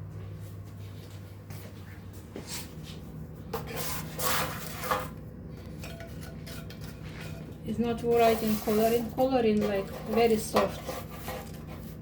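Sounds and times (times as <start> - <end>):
low steady hum: 0.0 - 12.0
rubbing and scraping sounds: 3.6 - 5.2, 5.8 - 12.0.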